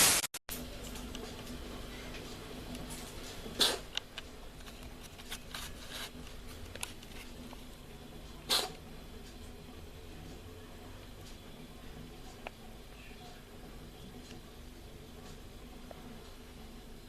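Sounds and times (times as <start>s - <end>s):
cat coughing: 3.6s - 3.9s, 8.5s - 8.8s.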